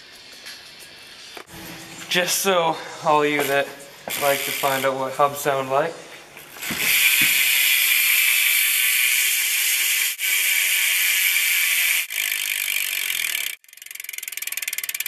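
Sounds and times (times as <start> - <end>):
bike hub ratchet buzzing: 3.2 - 5.8, 6.4 - 15.0
bike hub rapid clicks: 3.3 - 5.0, 6.5 - 15.0.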